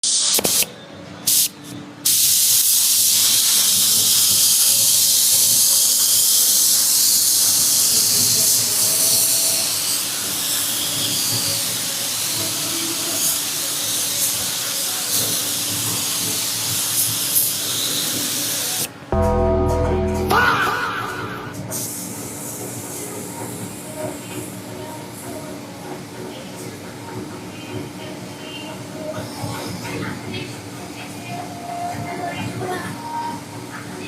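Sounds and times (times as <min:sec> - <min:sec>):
spraying hiss: 0:00.0 - 0:00.7, 0:01.3 - 0:18.9.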